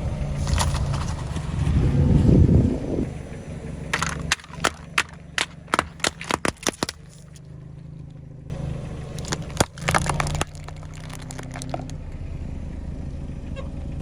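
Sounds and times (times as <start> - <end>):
car engine running: 0.0 - 14.0
objects crushed under tyres: 0.4 - 1.8, 3.9 - 7.5, 9.0 - 12.0.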